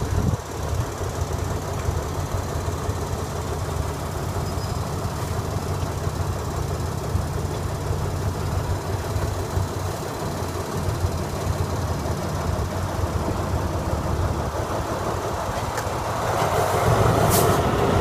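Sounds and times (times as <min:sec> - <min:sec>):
diesel train engine drone: 0:00.0 - 0:18.0
train wheel and carriage noise: 0:00.0 - 0:18.0.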